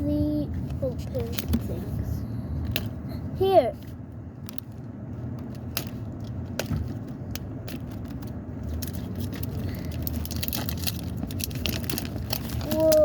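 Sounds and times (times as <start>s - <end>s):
low steady rumble: 0.0s - 13.0s
paper wrapper tearing: 8.8s - 13.0s.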